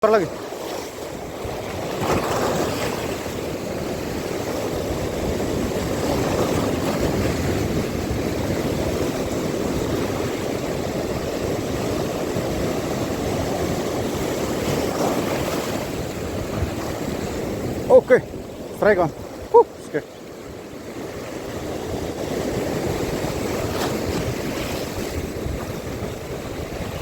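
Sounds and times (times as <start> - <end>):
sea surf rushing: 0.0 - 27.0.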